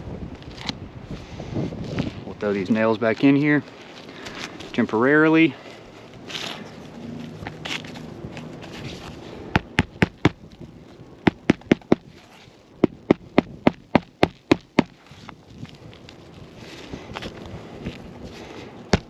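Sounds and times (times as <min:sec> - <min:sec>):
hammer striking nails: 0:09.6 - 0:10.4, 0:11.3 - 0:12.0, 0:12.8 - 0:15.0.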